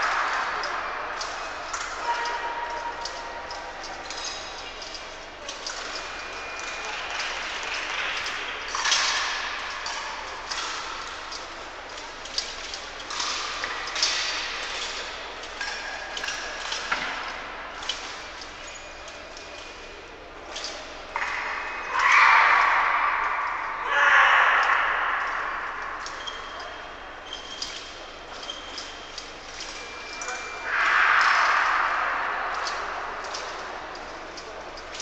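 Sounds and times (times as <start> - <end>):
large hall ambience: 0.0 - 35.0.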